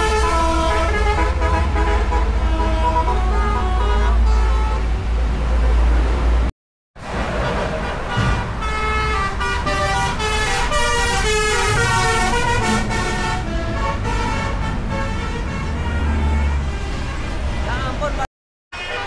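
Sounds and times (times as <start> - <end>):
multi-tone bus air horn tune: 0.0 - 5.1, 7.8 - 17.7, 18.8 - 19.0
low vehicle rumble: 0.0 - 18.3.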